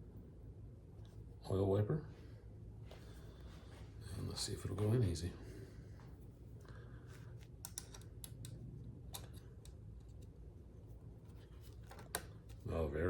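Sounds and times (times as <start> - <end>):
small metal parts clicking: 7.6 - 9.8.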